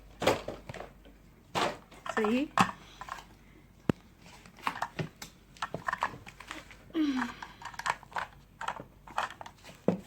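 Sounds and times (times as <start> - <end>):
plastic toys clicking and tapping: 0.2 - 10.0.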